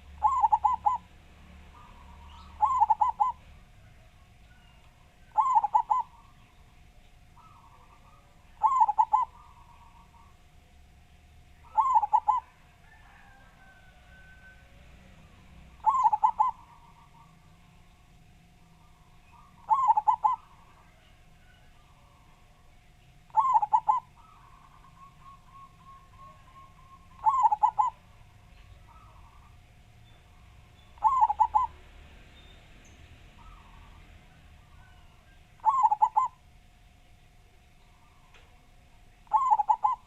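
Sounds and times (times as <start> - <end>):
dove cooing: 0.0 - 6.6, 7.4 - 10.5, 11.6 - 17.7, 18.7 - 22.5, 23.3 - 29.7, 31.0 - 31.9, 33.4 - 36.5, 39.2 - 40.0.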